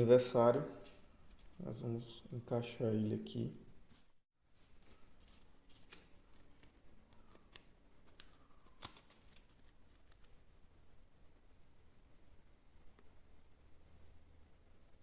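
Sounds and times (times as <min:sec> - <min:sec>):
paper clicking and rustling: 0:04.7 - 0:10.5.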